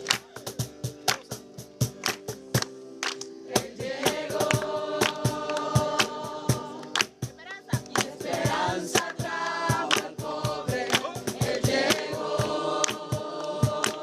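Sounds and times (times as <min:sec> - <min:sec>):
group singing: 0:03.4 - 0:07.2, 0:07.9 - 0:14.0
sharp percussive strikes: 0:03.5 - 0:14.0.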